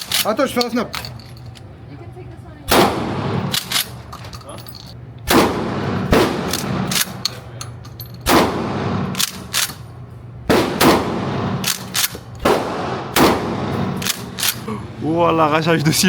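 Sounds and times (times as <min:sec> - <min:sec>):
steady low hum: 0:00.0 - 0:16.0
gunshots: 0:02.7 - 0:04.0, 0:05.2 - 0:07.4, 0:08.2 - 0:09.8, 0:10.5 - 0:14.6.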